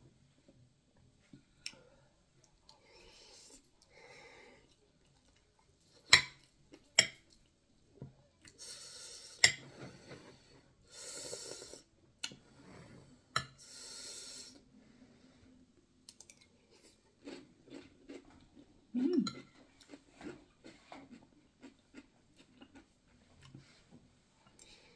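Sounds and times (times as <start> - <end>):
cutlery clinking on dishes: 6.0 - 7.4, 9.4 - 9.9
breathing and chewing: 19.4 - 23.9, 24.5 - 24.9.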